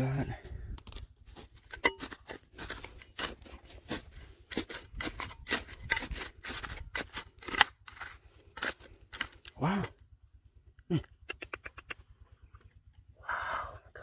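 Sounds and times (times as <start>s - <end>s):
digging in rocky gravel: 0.0s - 10.0s.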